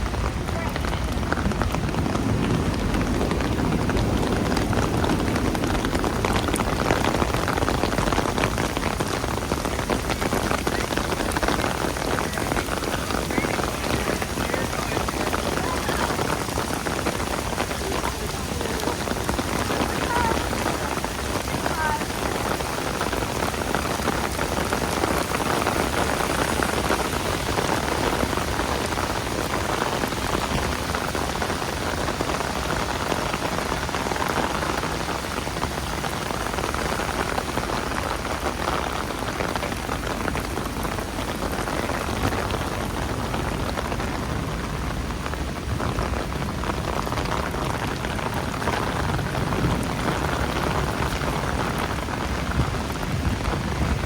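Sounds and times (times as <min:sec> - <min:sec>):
steady rain hissing: 0:00.0 - 0:54.0.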